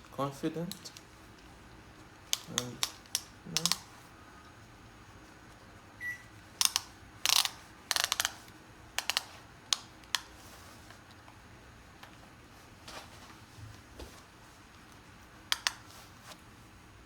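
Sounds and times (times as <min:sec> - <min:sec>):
belt buckle clicking: 0:02.3 - 0:03.9, 0:06.6 - 0:08.4, 0:09.0 - 0:10.3.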